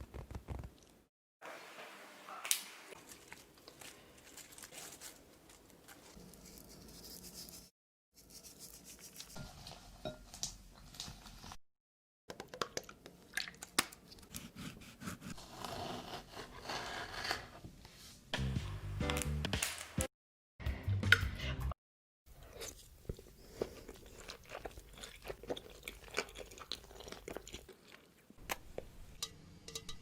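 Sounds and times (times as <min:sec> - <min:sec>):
scraping crinkling and crunching: 0:02.9 - 0:06.6.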